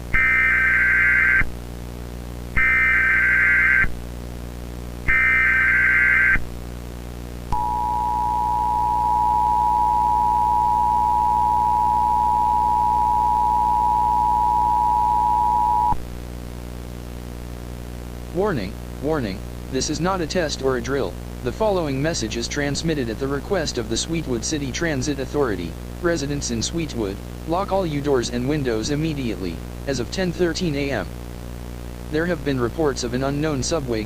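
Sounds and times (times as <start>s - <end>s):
low steady hum: 0.0s - 34.0s
screeching data bursts: 0.2s - 1.4s, 2.6s - 3.9s, 5.1s - 6.4s
two-tone attention signal: 7.6s - 16.0s.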